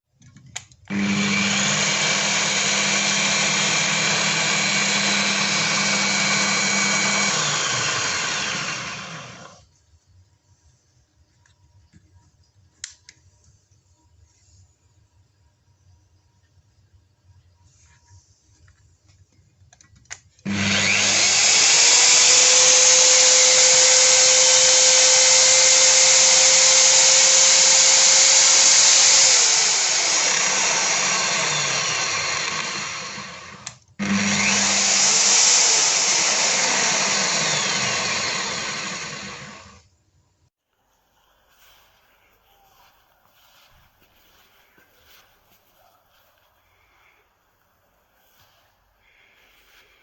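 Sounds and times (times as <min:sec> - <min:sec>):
brush sander motor running: 0:00.9 - 0:09.6, 0:20.4 - 0:39.8.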